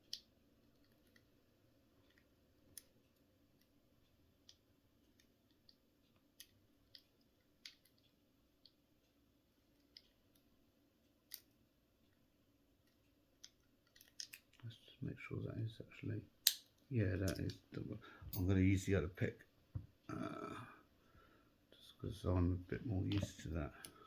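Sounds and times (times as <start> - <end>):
lock pick clicking in a lock: 13.9 - 14.6, 16.5 - 16.7.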